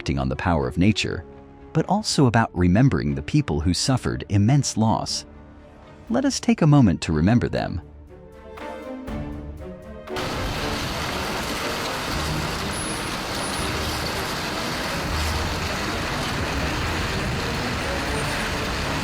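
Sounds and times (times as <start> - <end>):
floodwater rushing roar: 10.2 - 19.0.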